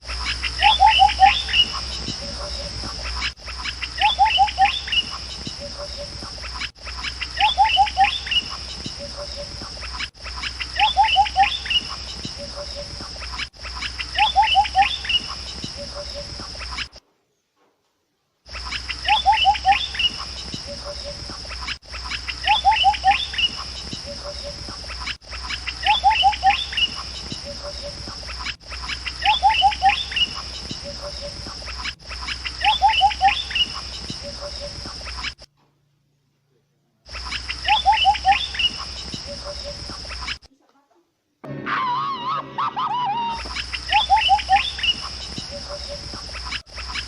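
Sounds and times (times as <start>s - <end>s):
bird chirps: 0.0s - 17.0s, 18.5s - 35.5s, 37.1s - 40.5s, 41.7s - 47.0s
high insect-like drone: 18.5s - 35.5s, 43.0s - 47.0s.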